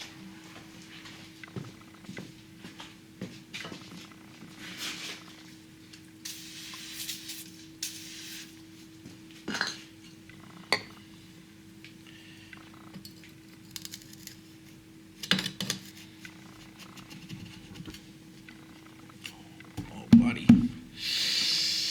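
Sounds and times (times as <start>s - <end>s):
hiss: 6.2s - 8.6s, 21.0s - 21.9s.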